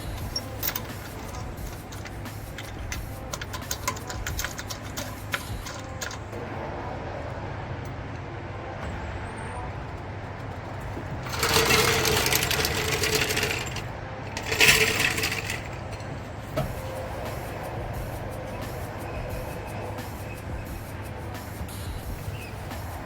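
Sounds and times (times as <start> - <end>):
rapid mechanical rattling: 0.0 - 6.6, 9.6 - 23.0.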